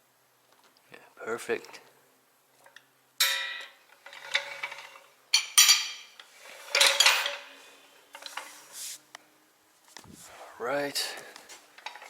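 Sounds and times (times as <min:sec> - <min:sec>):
metal objects clanking: 0:03.2 - 0:07.6.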